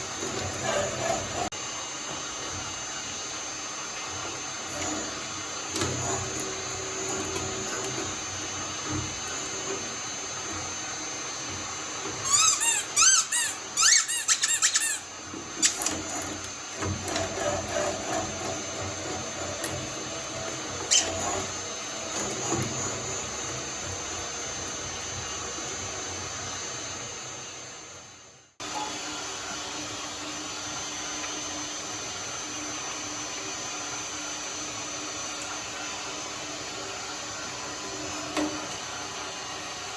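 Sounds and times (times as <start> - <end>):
shredder motor running: 0.0 - 39.9
sharp high squeaks: 12.2 - 16.0, 20.8 - 21.6.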